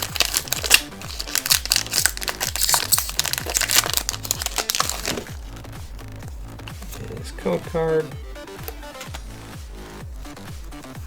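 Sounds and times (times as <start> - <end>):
foil wrapper crinkling: 0.0 - 7.0
electronic music with beat: 0.0 - 11.0.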